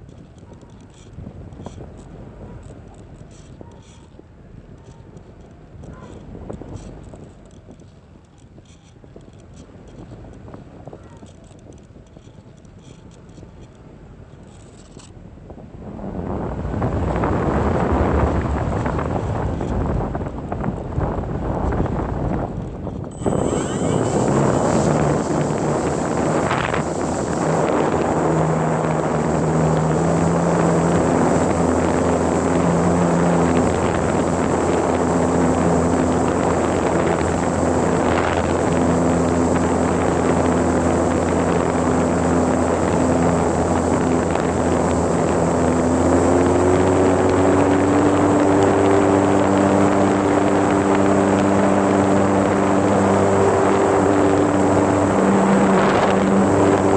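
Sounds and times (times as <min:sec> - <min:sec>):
model airplane motor and propeller: 0:00.0 - 0:15.4, 0:22.6 - 0:56.9
wind on microphone: 0:15.2 - 0:56.9.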